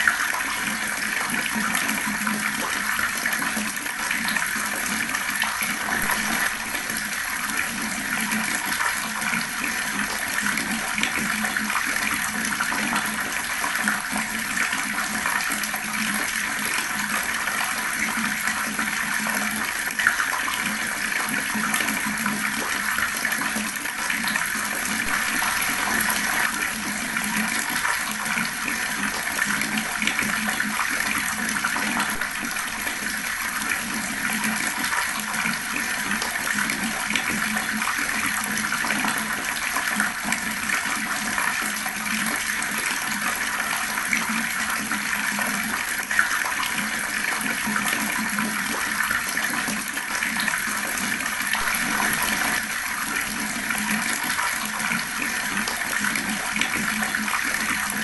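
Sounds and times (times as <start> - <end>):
fast-flowing water rushing: 0.0 - 58.0.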